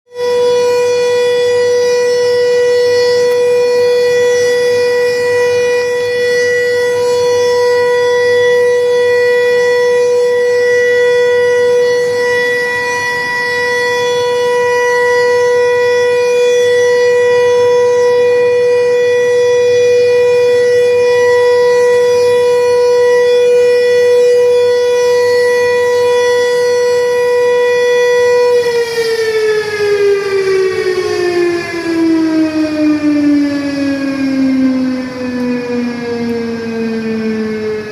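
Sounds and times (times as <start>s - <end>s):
siren steady tone: 0.1s - 37.9s.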